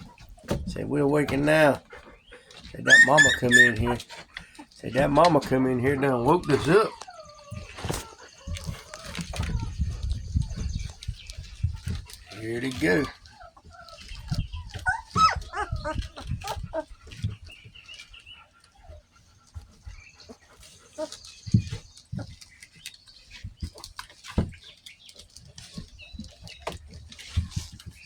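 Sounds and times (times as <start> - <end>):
puppies squeaking and whimpering: 0.0 - 28.0
rustling and thumps in bedding: 7.5 - 13.0.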